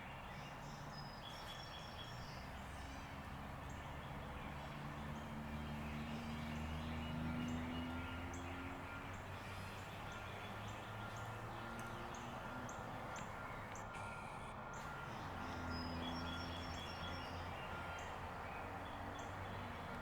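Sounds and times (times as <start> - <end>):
bird chirping: 14.8 - 20.0.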